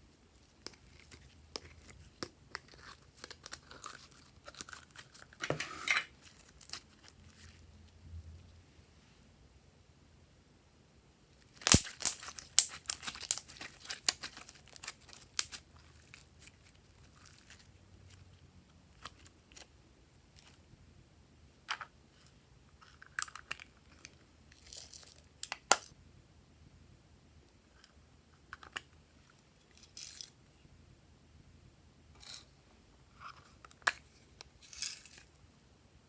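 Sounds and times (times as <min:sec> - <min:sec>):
slime crackling and popping: 0:11.5 - 0:15.6.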